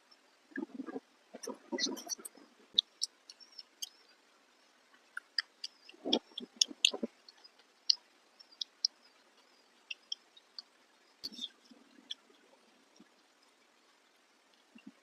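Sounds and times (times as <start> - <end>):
chewing with wet mouth clicks: 0.6 - 4.2, 4.9 - 13.1.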